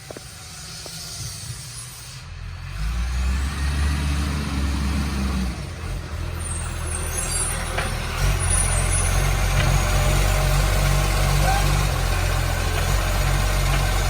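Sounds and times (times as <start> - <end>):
diesel truck engine running: 2.2 - 14.0
faint high squeaks: 6.4 - 10.0.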